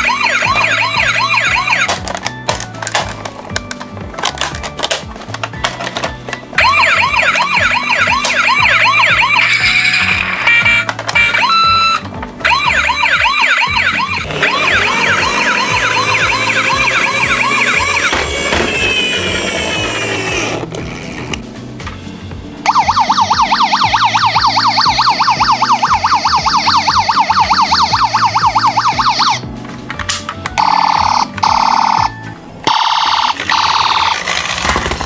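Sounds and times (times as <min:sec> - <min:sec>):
emergency siren wailing: 0:00.0 - 0:02.0, 0:06.6 - 0:20.6, 0:22.7 - 0:29.4
fast siren yelp: 0:06.6 - 0:09.9, 0:11.2 - 0:18.1, 0:22.7 - 0:29.4.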